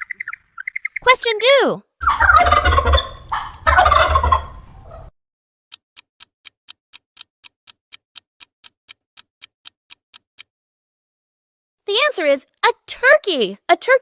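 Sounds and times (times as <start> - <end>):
steady ticking: 2.0 - 5.1
turkey gobbling: 2.0 - 5.1.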